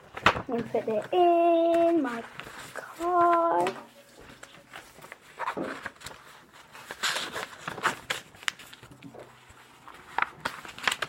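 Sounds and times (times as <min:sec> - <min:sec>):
paper rustling: 0:00.0 - 0:11.0.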